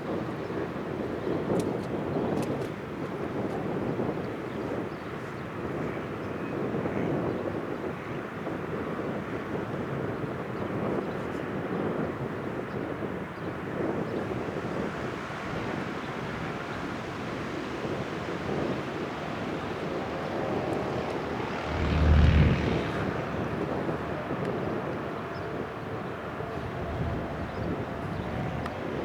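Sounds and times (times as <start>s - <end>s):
light aircraft engine droning: 0.0s - 29.0s
low rumble: 19.0s - 25.9s.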